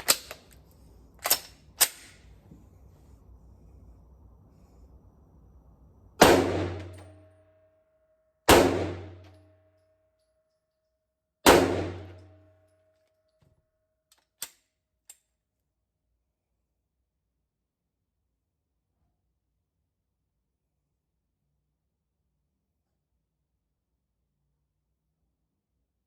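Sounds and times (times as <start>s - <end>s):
gunshots with echo: 6.2s - 7.1s, 8.5s - 9.3s, 11.5s - 12.2s.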